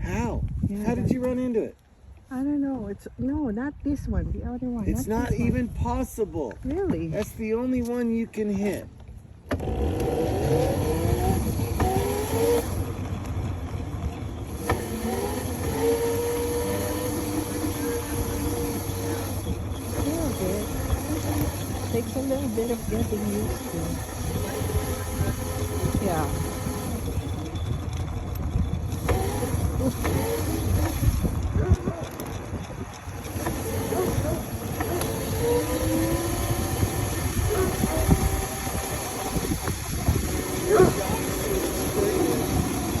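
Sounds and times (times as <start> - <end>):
wind buffeting microphone: 0.0 - 43.0
tyres rolling on ground: 8.7 - 43.0
electric motor whine: 9.5 - 43.0.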